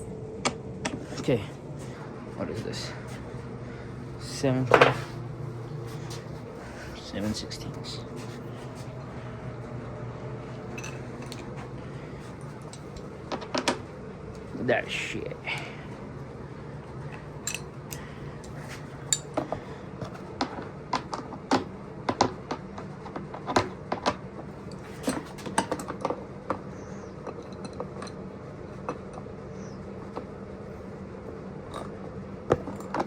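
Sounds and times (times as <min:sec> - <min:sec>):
low hum: 0:00.0 - 0:22.1
metallic clinks of hand tools: 0:17.5 - 0:17.7.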